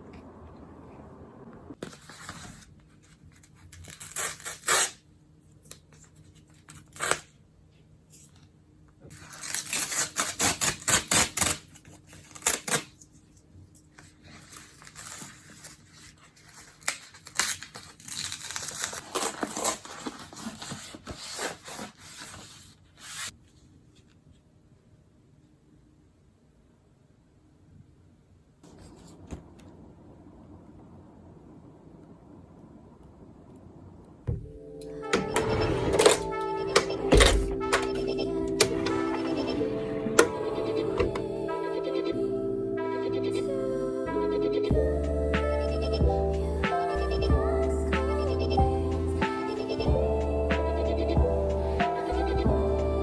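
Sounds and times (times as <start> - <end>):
packaging crinkling and tearing: 9.1 - 13.0, 14.3 - 23.3.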